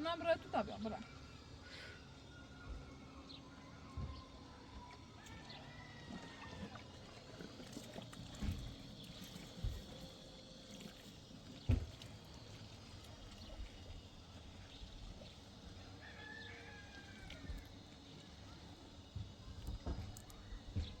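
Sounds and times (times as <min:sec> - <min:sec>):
water pouring and trickling: 0:05.3 - 0:20.5.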